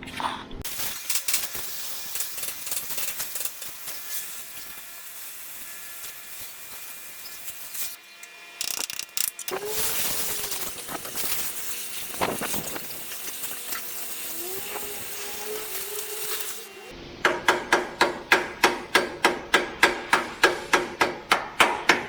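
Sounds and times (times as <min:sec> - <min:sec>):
crackle of burning metal: 0:00.7 - 0:08.0, 0:09.5 - 0:16.7
cutting torch hissing: 0:00.7 - 0:08.0, 0:09.5 - 0:17.0.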